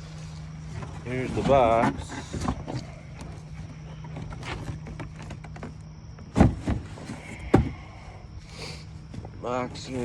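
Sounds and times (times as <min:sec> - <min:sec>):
steady low hum: 0:00.0 - 0:10.0
cardboard box knocks and scuffs: 0:06.2 - 0:07.7
box thump: 0:06.3 - 0:06.9.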